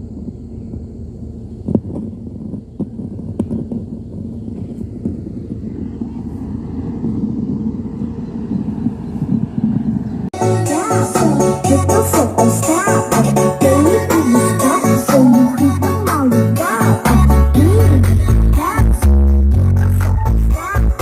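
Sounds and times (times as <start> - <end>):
steady low rumble: 0.0 - 21.0
loud bass-heavy music over pa: 10.4 - 21.0.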